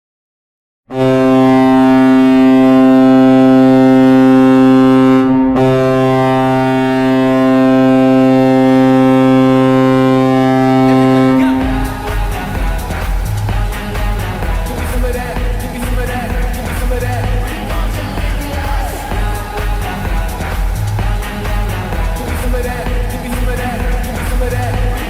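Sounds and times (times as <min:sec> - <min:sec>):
deep goal horn blasting: 0:00.9 - 0:24.0
song with pulsing beat: 0:05.5 - 0:25.0.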